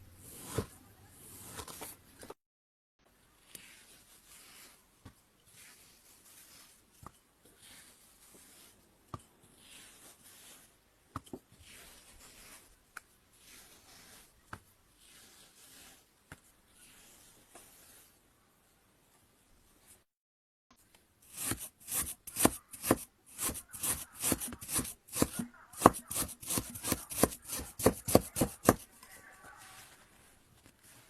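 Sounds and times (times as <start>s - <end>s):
kinetic sand scraping swishes: 21.3s - 28.8s.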